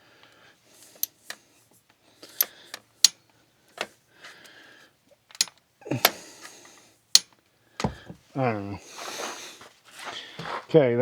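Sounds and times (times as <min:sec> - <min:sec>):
ratchet wrench clicking: 0:05.3 - 0:05.6.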